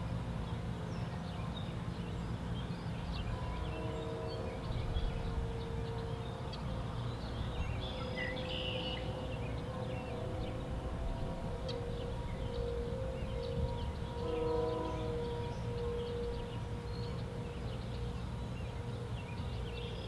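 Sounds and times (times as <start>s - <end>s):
birds chirping: 3.2s - 18.2s
outdoor warning siren steady tone: 3.2s - 19.2s.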